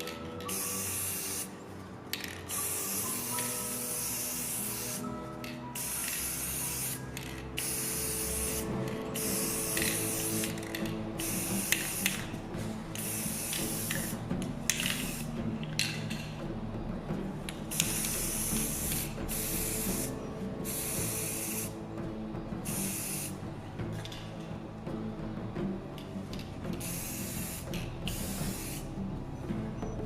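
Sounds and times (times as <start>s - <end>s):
hissing spray bursts: 0.0s - 1.5s, 2.5s - 12.3s, 12.9s - 15.3s, 17.7s - 21.8s, 22.6s - 23.4s, 26.8s - 28.9s.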